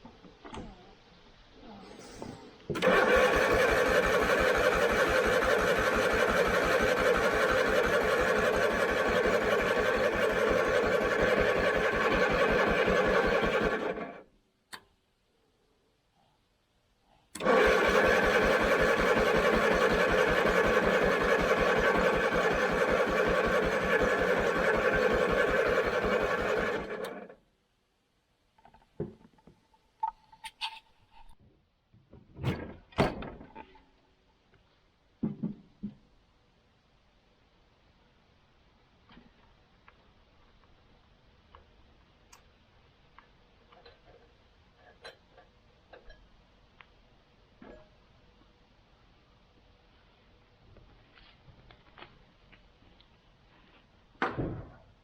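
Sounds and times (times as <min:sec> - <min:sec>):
mower engine starter cranking: 0:02.7 - 0:14.2, 0:17.4 - 0:27.4.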